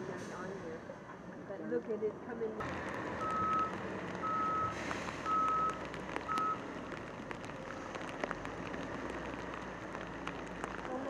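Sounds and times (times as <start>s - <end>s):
reversing alarm beeping: 3.2s - 6.6s.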